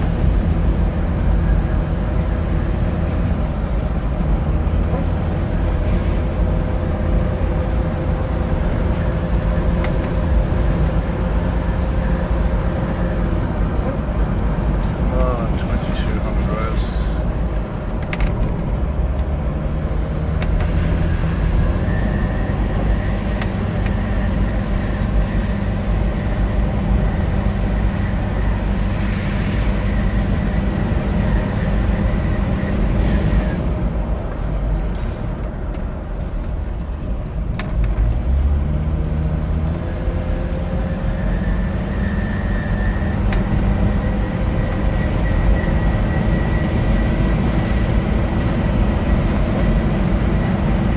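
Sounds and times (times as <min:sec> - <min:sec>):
diesel engine revving: 0:00.0 - 0:35.4, 0:37.0 - 0:50.9
turbocharger whistle: 0:21.2 - 0:23.2, 0:40.9 - 0:47.5.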